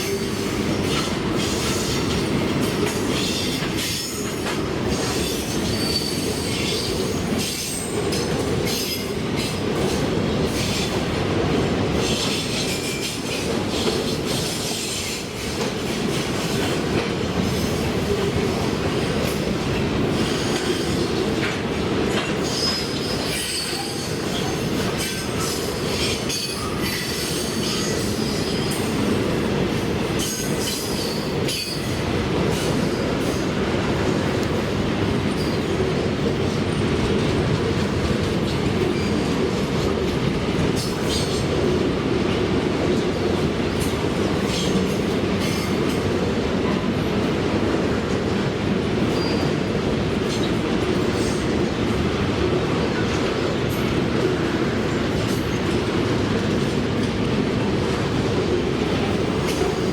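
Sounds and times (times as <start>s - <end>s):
steel wheels rumbling on rail: 0.0s - 59.9s
high wheel squeals: 5.7s - 6.8s.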